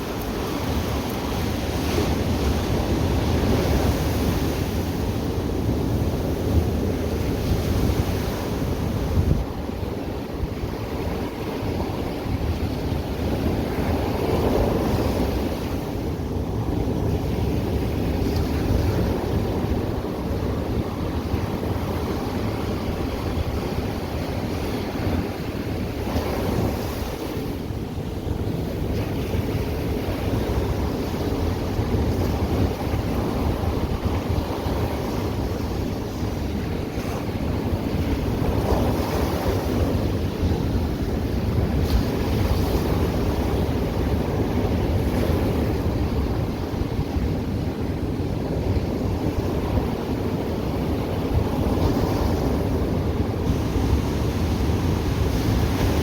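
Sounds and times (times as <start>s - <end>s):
wind buffeting microphone: 0.0s - 56.0s
ocean surf breaking: 48.6s - 56.0s.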